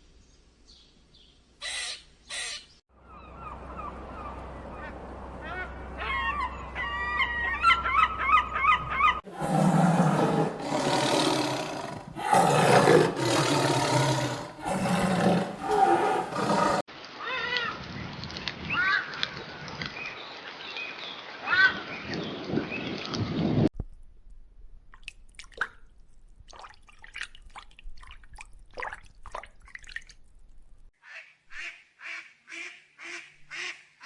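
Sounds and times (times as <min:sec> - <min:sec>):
big cat roaring: 0:09.3 - 0:16.8.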